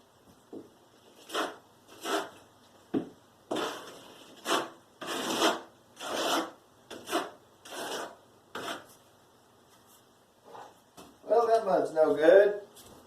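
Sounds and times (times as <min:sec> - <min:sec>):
rasping strokes on drywall: 0:01.0 - 0:02.5, 0:03.5 - 0:09.0.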